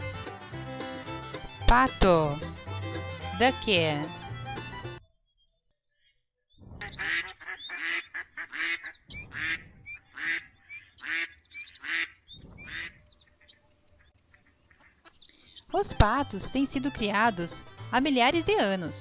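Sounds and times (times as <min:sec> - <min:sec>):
duck quacking: 0:06.8 - 0:15.2.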